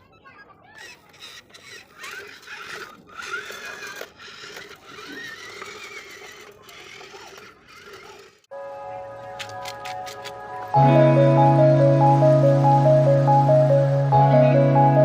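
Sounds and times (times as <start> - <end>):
small electric motor whirring: 0.7 - 8.5.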